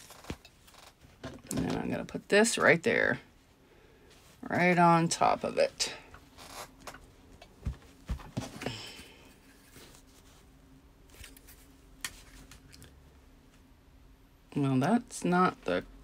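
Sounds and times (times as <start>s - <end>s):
fabric rustle: 3.3s - 5.4s, 9.4s - 10.5s.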